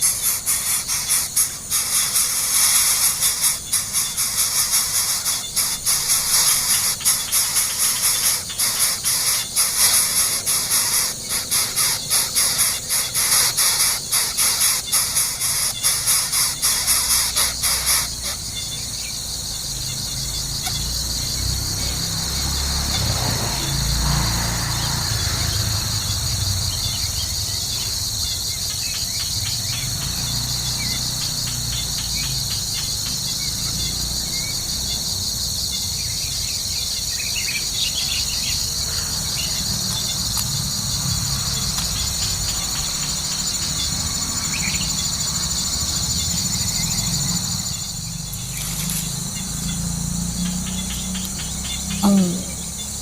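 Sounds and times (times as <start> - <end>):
insects trilling: 0.0 - 53.0
loud gliding call: 52.0 - 52.9.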